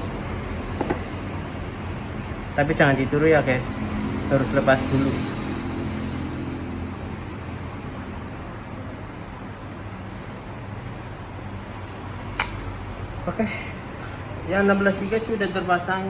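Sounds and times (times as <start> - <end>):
steady background hum: 0.0 - 16.0
sharp click: 12.4 - 12.7.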